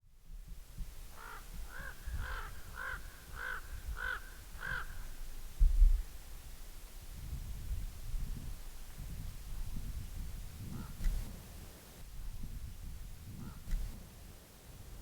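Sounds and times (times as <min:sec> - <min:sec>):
crow cawing: 0:01.2 - 0:05.1.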